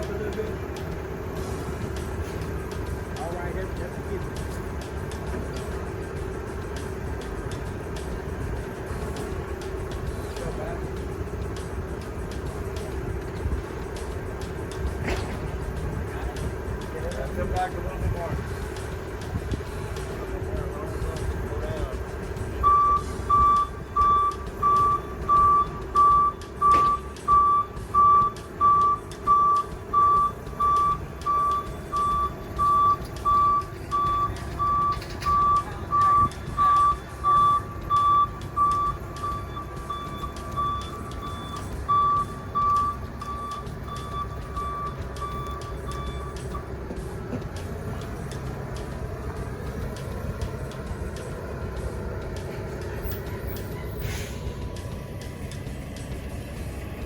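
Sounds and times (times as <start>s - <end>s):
truck engine running: 0.0s - 57.0s
backup alarm beeping: 22.5s - 46.8s.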